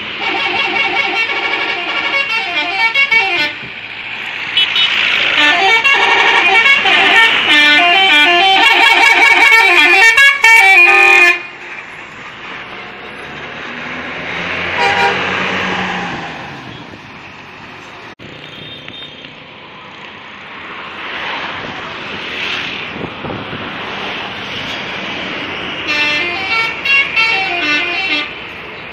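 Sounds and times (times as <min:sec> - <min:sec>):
passing traffic: 0:00.0 - 0:28.9
bus musical horn tune: 0:00.2 - 0:03.7, 0:04.6 - 0:11.6, 0:14.7 - 0:15.9, 0:25.9 - 0:28.4.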